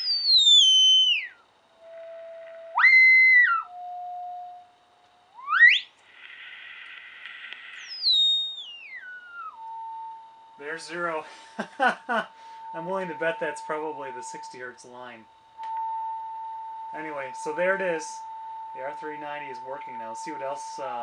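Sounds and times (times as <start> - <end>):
radio receiver whistling tones: 0.0 - 11.2, 12.5 - 21.0
radio hiss: 6.0 - 8.4, 10.6 - 15.2, 17.0 - 18.2, 18.8 - 21.0.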